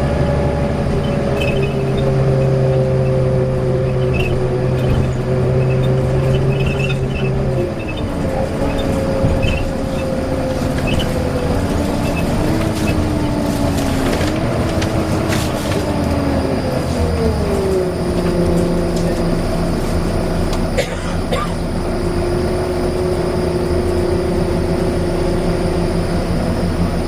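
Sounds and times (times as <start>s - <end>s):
bus engine running: 0.0s - 27.0s
whine of bus: 0.0s - 27.0s.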